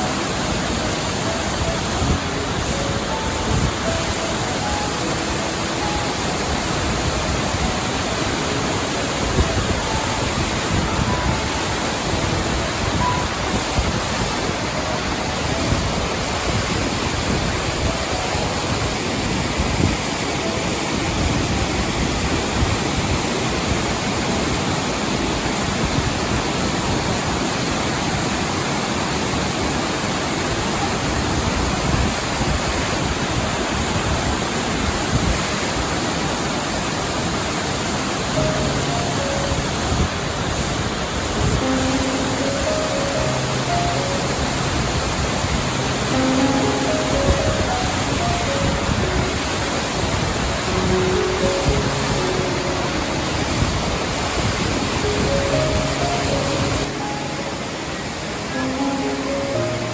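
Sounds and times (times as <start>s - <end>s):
faint musical notes: 0.0s - 25.2s, 38.1s - 59.9s
waterfall rushing: 0.0s - 59.9s.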